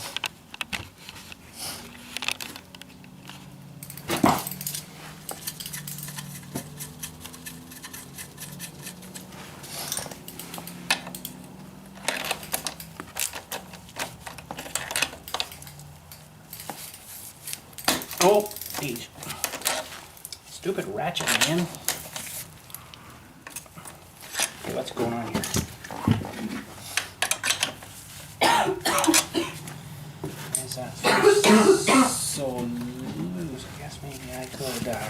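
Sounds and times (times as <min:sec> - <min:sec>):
metal hand tools clinking: 0:03.8 - 0:20.5, 0:28.8 - 0:29.4.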